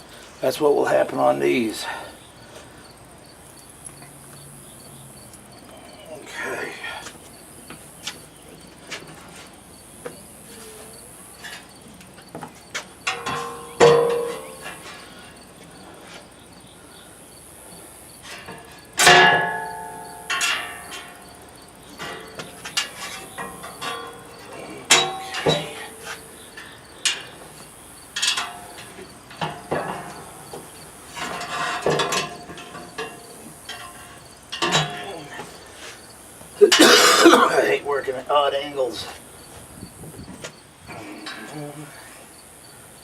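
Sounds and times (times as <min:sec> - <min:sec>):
steel parts clanking and ringing: 0:13.0 - 0:15.0, 0:18.4 - 0:21.3, 0:22.0 - 0:27.3, 0:28.2 - 0:35.3.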